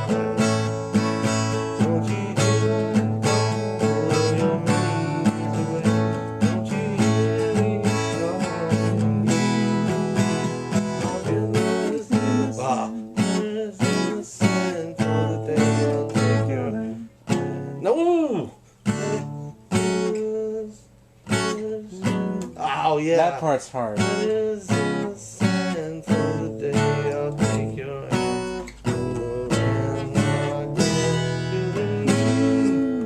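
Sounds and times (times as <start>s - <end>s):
acoustic guitar strumming: 0.0s - 33.0s.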